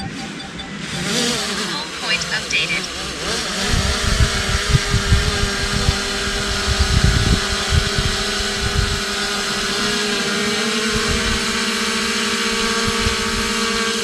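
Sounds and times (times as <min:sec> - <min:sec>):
steady mechanical hum: 0:00.0 - 0:14.0
wind buffeting microphone: 0:03.6 - 0:09.3.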